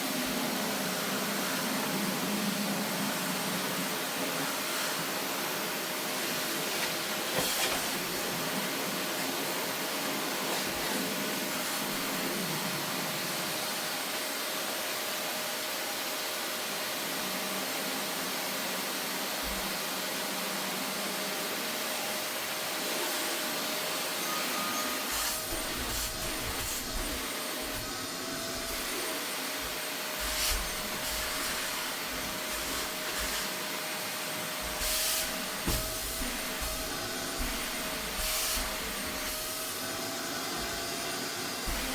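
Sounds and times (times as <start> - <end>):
vacuum cleaner running: 0.0 - 41.9
nozzle bumping and rubbing: 34.6 - 39.4.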